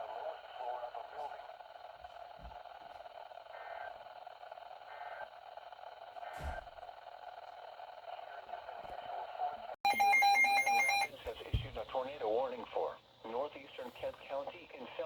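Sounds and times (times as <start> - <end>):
radio static hiss: 0.0 - 2.6, 11.1 - 15.0.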